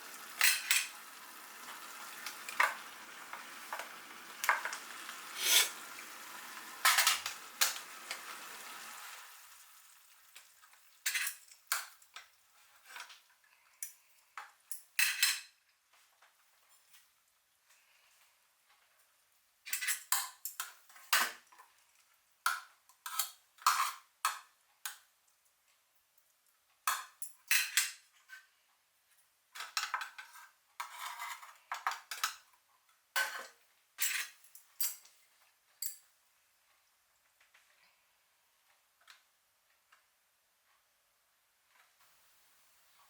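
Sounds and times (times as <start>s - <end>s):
metal utensil scraping a tin: 5.4s - 5.8s, 30.2s - 31.6s.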